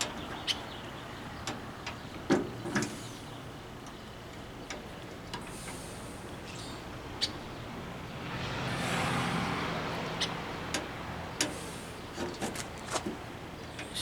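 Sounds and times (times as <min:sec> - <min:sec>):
vehicle passing: 0:05.4 - 0:14.0.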